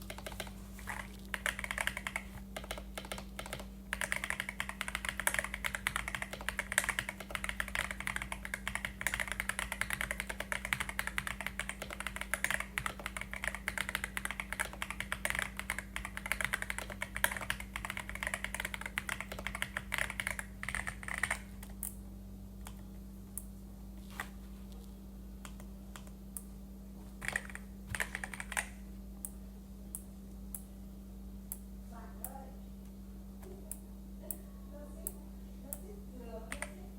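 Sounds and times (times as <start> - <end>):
typing on mechanical keyboard: 0.0 - 21.7, 27.2 - 28.7, 36.5 - 36.8.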